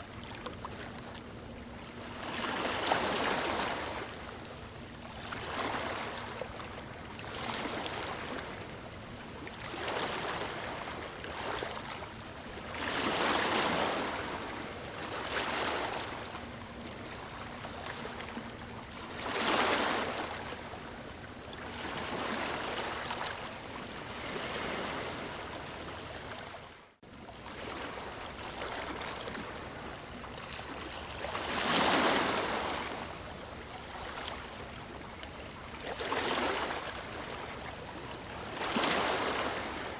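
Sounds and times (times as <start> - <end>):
ocean waves breaking on beach: 30.9 - 34.8.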